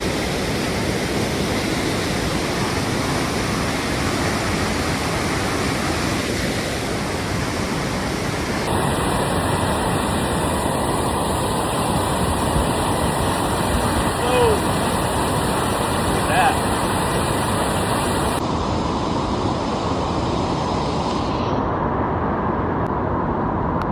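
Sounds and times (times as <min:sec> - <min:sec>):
flooded creek rushing: 0:00.3 - 0:18.4.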